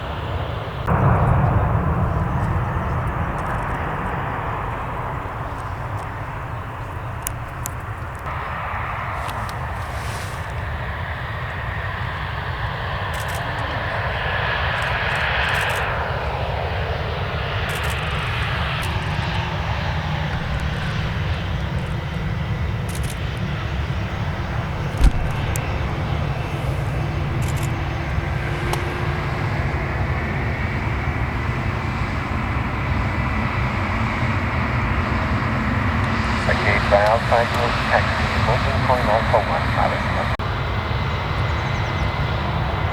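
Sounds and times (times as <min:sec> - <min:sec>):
airliner engines rumbling: 0:00.0 - 0:42.9
sharp thump: 0:24.8 - 0:25.7.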